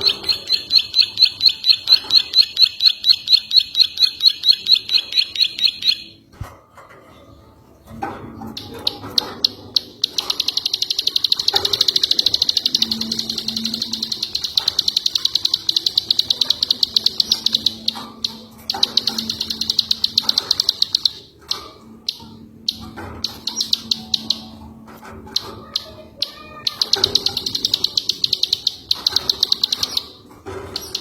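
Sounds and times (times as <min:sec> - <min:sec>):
songbird trilling: 0:00.0 - 0:06.2.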